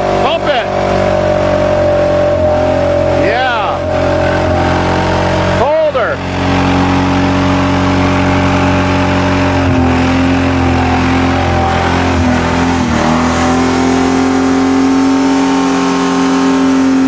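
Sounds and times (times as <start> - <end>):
car engine at high revs: 0.0 - 17.0.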